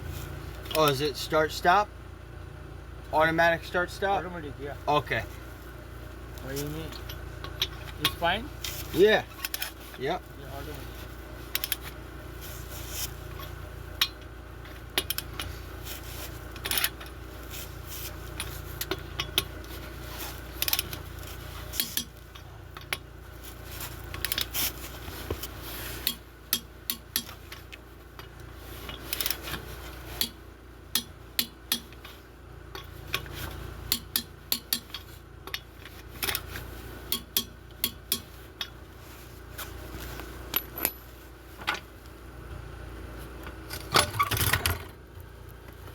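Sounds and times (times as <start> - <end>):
low steady hum: 0.0 - 45.9
metal tools clinking and scraping: 6.4 - 30.4, 31.0 - 41.9, 43.6 - 44.9.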